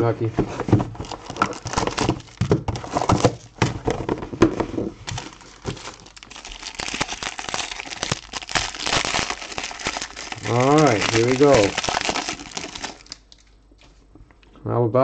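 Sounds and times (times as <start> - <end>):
plastic wrapper crinkling: 0.9 - 4.1, 5.0 - 13.6.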